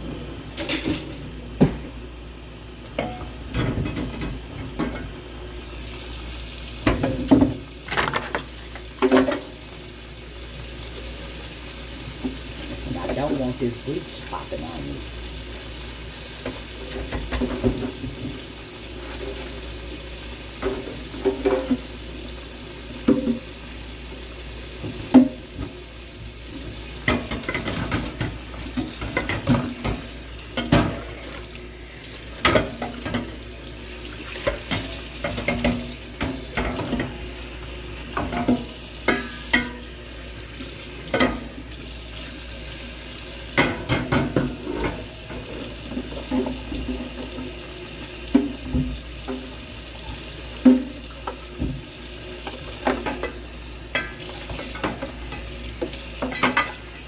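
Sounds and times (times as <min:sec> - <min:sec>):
water running in sink: 0:00.0 - 0:57.0
dishes clinking and knocking: 0:20.6 - 0:21.8, 0:43.6 - 0:47.3.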